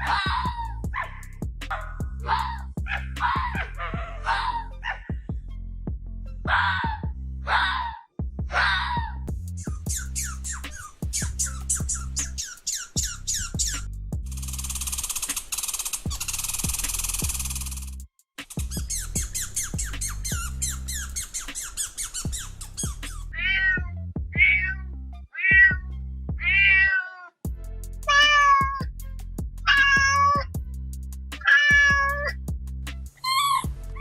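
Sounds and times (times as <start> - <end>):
background music: 0.0 - 34.0
animal calling: 6.5 - 17.9, 18.6 - 24.8, 29.7 - 30.4, 33.2 - 34.0.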